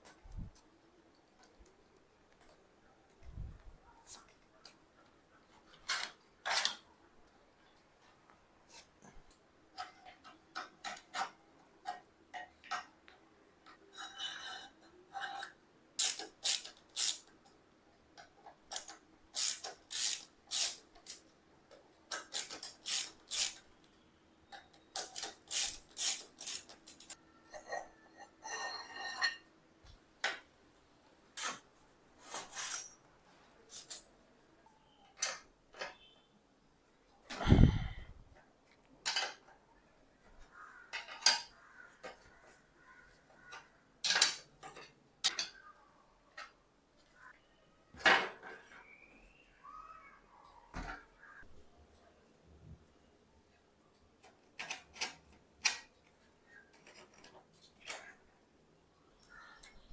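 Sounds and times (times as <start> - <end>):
hand tools clicking on metal: 16.0 - 17.3.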